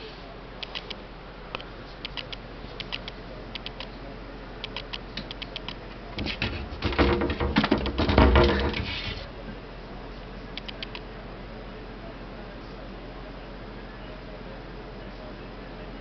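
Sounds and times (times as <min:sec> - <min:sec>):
scratching and thumping against door: 0:06.2 - 0:09.3.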